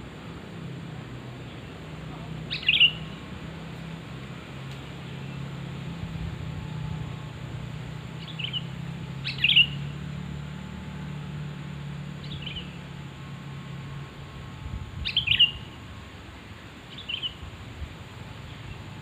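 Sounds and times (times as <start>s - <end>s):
bird chirping phrases: 1.4s - 3.4s, 8.1s - 10.0s, 12.2s - 12.9s, 15.0s - 15.8s, 16.9s - 17.4s.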